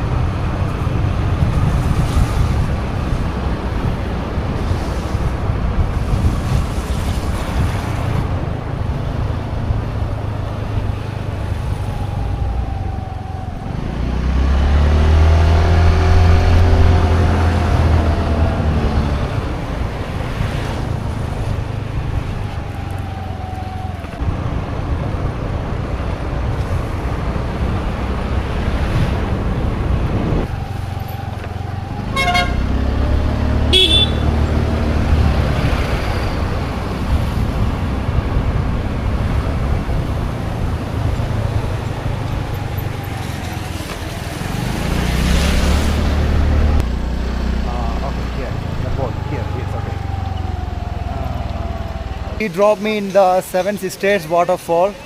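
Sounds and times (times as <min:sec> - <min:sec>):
car horn tooting: 0:32.1 - 0:32.8, 0:33.7 - 0:34.4.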